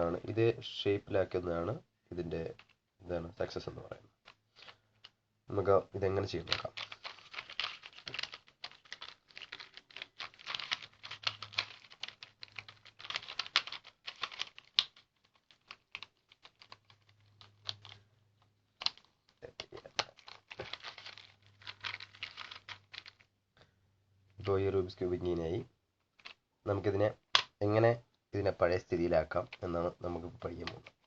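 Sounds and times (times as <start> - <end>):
puzzle cube clicks and rattles: 2.4 - 2.8, 6.1 - 23.3, 26.0 - 27.6, 29.2 - 31.0.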